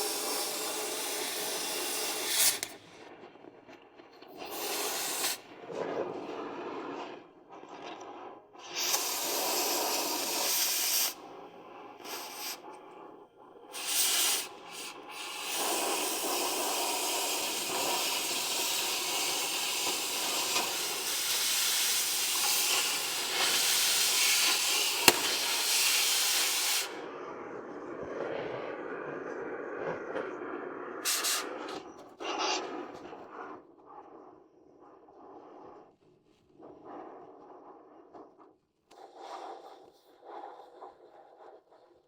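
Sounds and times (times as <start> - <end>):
hissing: 0.0 - 3.1, 4.2 - 5.5, 8.6 - 12.7, 13.7 - 27.1, 31.0 - 32.4
sharp click: 21.8 - 26.1.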